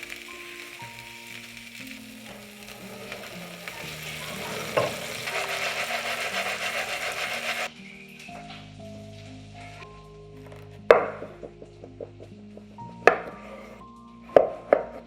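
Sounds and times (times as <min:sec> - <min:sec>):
food sizzling in oil: 0:00.0 - 0:09.8.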